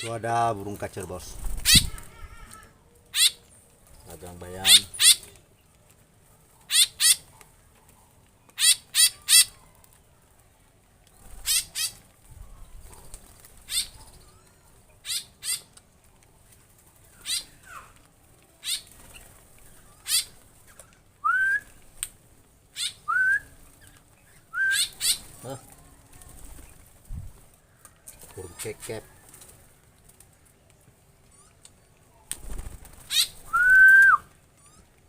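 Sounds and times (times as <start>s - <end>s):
birds squawking harshly: 1.4s - 3.4s, 4.5s - 5.4s, 6.7s - 7.3s, 8.6s - 9.6s, 11.3s - 12.0s, 13.6s - 14.4s, 15.0s - 15.7s, 17.2s - 17.8s, 18.6s - 20.4s, 22.7s - 23.1s, 24.7s - 25.5s, 32.5s - 33.5s.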